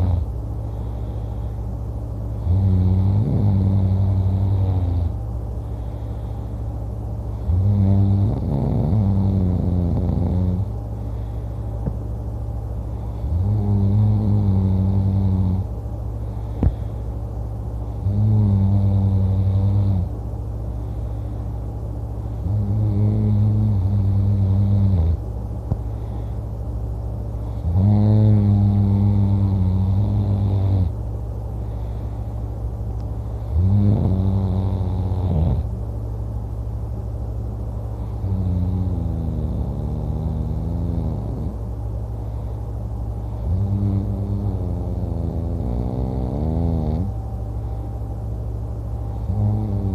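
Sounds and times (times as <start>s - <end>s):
man snoring loudly: 0.0s - 0.3s, 2.4s - 5.2s, 7.3s - 10.7s, 13.1s - 15.7s, 18.0s - 20.1s, 22.4s - 25.2s, 27.5s - 31.0s, 33.4s - 35.7s, 38.2s - 41.6s, 43.4s - 47.2s, 49.2s - 49.9s
low rumble of breathing: 0.0s - 49.9s.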